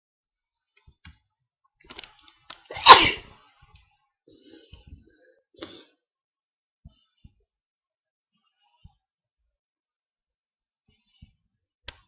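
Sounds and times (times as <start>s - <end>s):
person sneezing: 2.7s - 3.4s.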